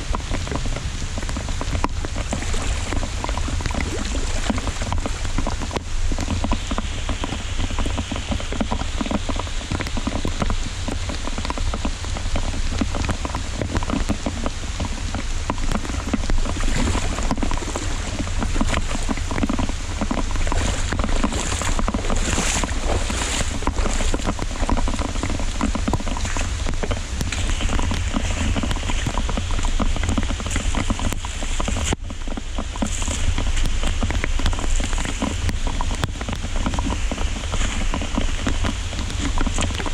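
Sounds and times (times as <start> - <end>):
heavy rain pouring: 0.0 - 39.9
low rumble: 0.0 - 39.9.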